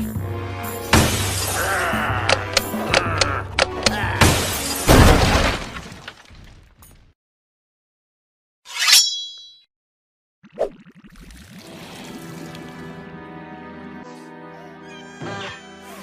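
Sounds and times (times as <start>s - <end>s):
cartoon music: 13.9s - 16.0s.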